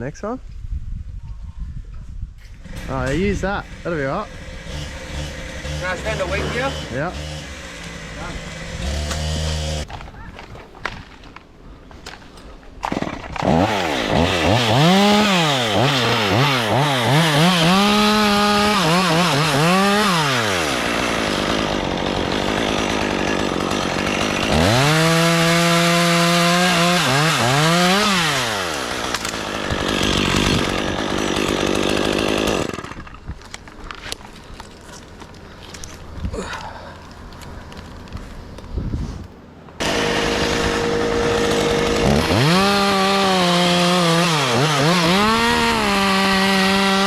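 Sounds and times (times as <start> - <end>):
chain cutting wood: 2.5 - 11.4, 12.1 - 38.3, 39.8 - 47.0
chainsaw revving: 2.6 - 9.9, 12.9 - 33.2, 39.8 - 47.0.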